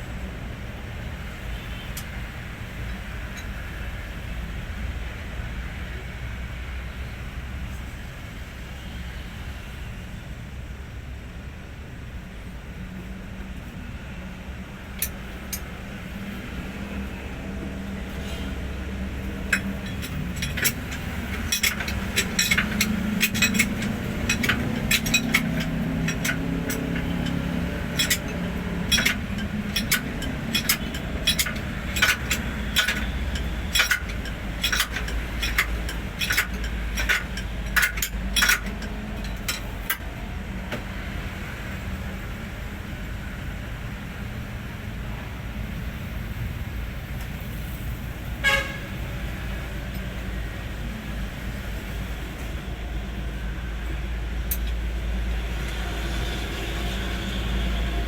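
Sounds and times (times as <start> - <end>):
sharp metallic clinks and taps: 19.2 - 40.0.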